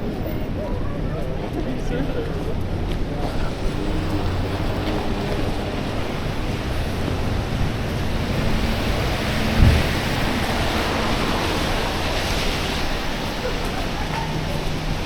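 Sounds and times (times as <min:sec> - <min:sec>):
city traffic: 0:00.0 - 0:15.0
wind: 0:00.0 - 0:15.0
low thump: 0:09.5 - 0:10.2.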